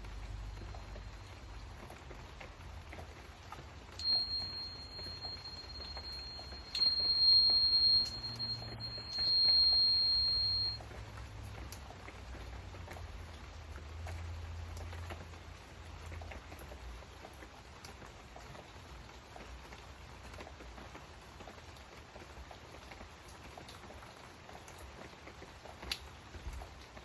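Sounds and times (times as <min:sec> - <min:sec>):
rain pattering: 0:00.0 - 0:27.0
tuning fork ringing: 0:04.0 - 0:10.8.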